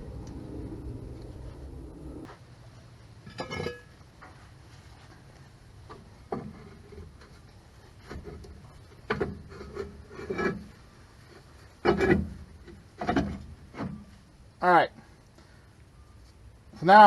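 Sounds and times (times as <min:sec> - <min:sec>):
metal parts scraping and knocking: 0:03.2 - 0:03.9, 0:08.0 - 0:10.7, 0:11.3 - 0:14.0.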